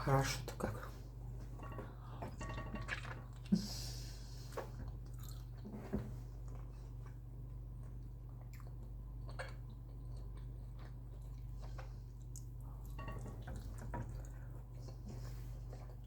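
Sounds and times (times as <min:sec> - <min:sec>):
steady low hum: 0:00.0 - 0:16.0
person chewing: 0:04.9 - 0:05.6, 0:06.4 - 0:16.0.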